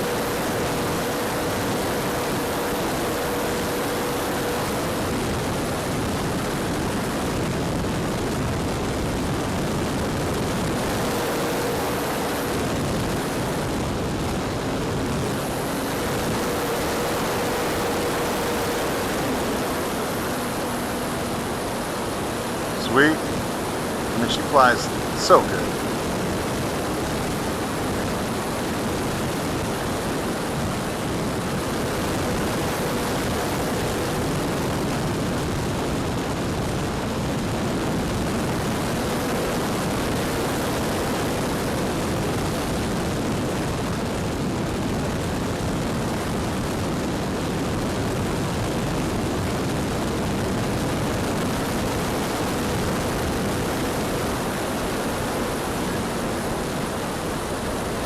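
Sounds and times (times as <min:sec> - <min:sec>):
model airplane motor hum: 0:00.0 - 0:24.2, 0:24.9 - 0:36.8
wind noise on microphone: 0:00.0 - 0:24.2, 0:24.9 - 0:58.0.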